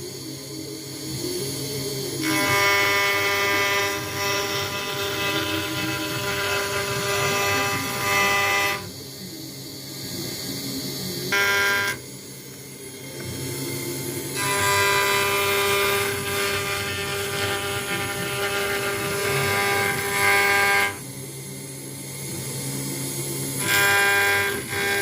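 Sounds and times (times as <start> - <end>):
router spindle cutting acrylic: 2.1 - 8.9, 11.2 - 12.1, 14.2 - 21.1, 23.5 - 25.0.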